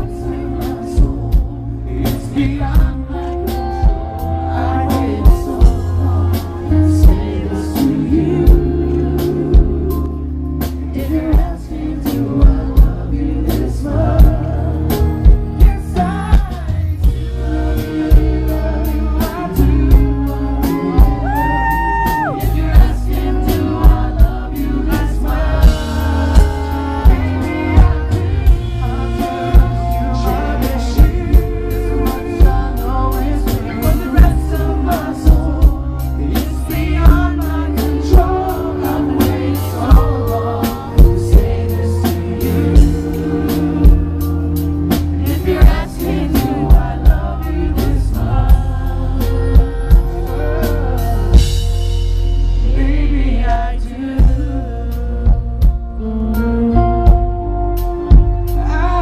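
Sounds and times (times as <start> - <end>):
drum kit beat: 0.0 - 59.0
sustained bass: 0.0 - 59.0.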